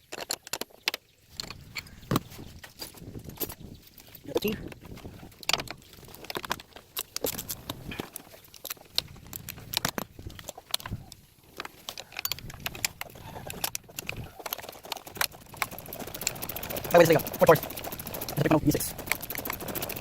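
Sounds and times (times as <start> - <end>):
ratchet clicking: 12.1 - 20.0.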